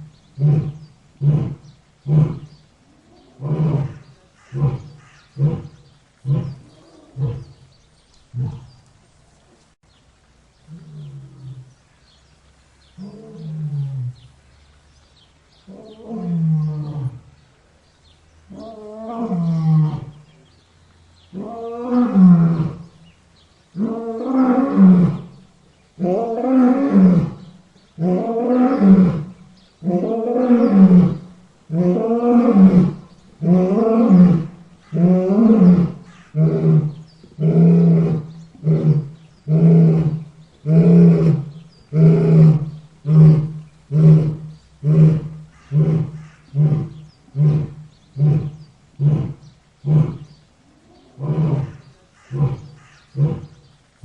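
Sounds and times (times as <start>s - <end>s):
lion roaring: 0.4s - 7.6s, 26.0s - 50.3s, 50.9s - 53.6s.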